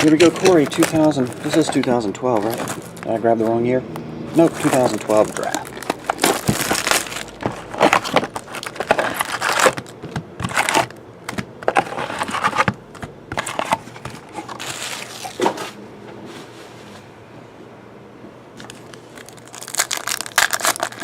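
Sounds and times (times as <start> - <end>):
plastic wrapping tearing and crinkling: 0.0 - 3.6, 4.3 - 11.0, 14.4 - 15.6, 18.6 - 21.0.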